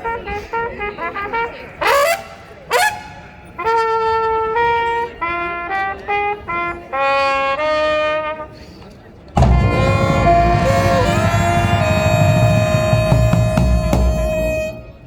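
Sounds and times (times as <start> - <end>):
trumpet playing: 9.4 - 15.0.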